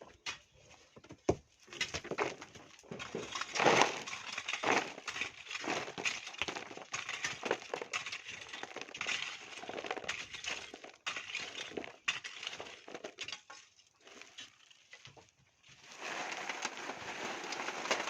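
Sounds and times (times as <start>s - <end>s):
stones clinking and crunching: 1.7s - 18.0s
tools digging into gravel: 3.0s - 14.8s, 15.8s - 18.0s.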